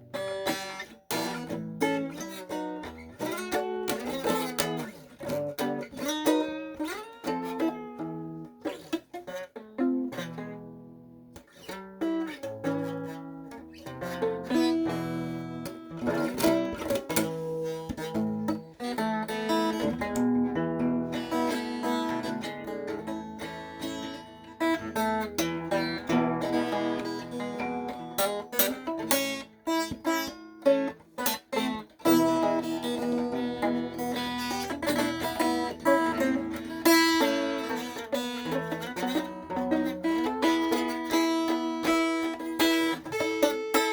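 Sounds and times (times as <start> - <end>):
acoustic guitar picked and strummed: 0.0 - 43.9.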